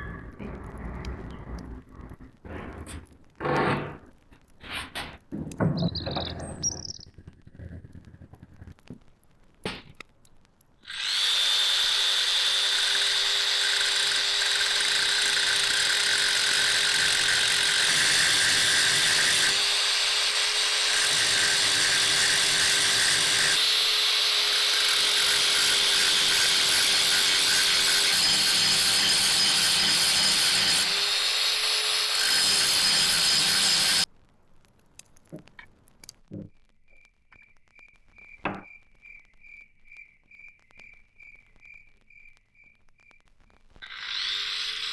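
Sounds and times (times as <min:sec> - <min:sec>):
power tool grinding: 0:10.8 - 0:34.1, 0:43.8 - 0:44.9.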